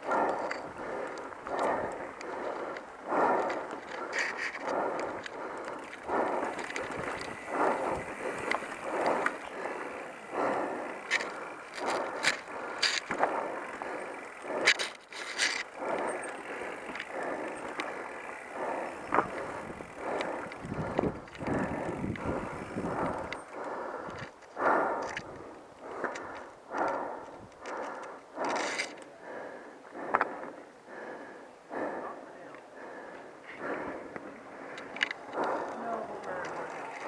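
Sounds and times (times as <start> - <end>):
bike tyres on dirt trail: 0.0 - 29.1, 33.0 - 37.0.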